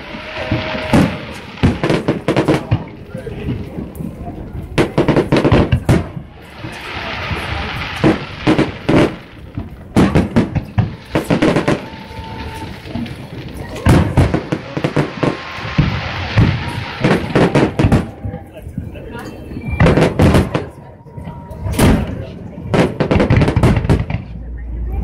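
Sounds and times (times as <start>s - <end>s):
fireworks crackling hiss: 0.0s - 20.8s
fireworks bangs: 0.0s - 24.5s.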